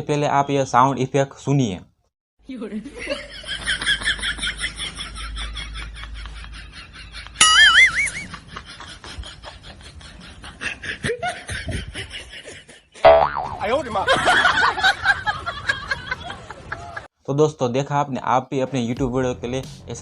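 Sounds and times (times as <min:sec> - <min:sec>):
cartoonish laughter and snickering: 0:03.1 - 0:13.1
loud wobbling warble: 0:07.4 - 0:08.3, 0:13.1 - 0:13.7.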